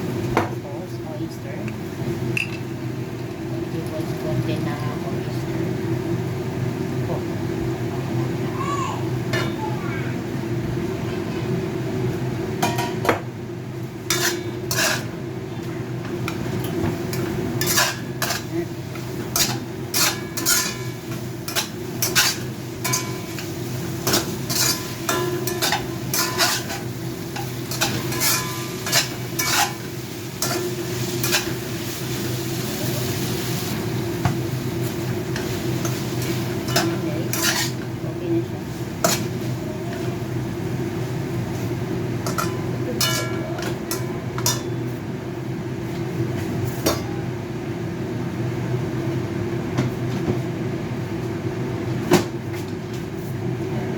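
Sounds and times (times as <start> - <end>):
food sizzling: 1.4 - 47.6
spatula scraping a frying pan: 14.1 - 15.1, 17.1 - 29.8, 30.4 - 31.6, 35.3 - 37.9.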